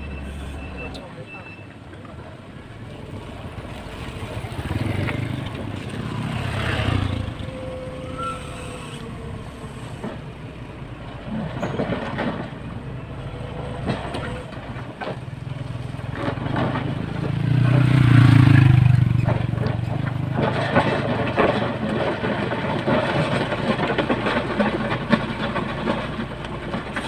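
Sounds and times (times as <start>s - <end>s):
diesel engine running: 2.1s - 11.9s, 13.0s - 27.0s
knocks and rattles: 13.4s - 27.0s.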